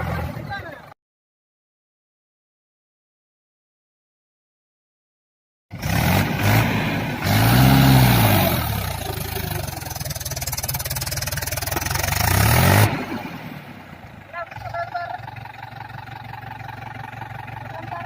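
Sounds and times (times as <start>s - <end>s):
tractor diesel engine revving: 0.0s - 0.9s, 5.7s - 18.0s.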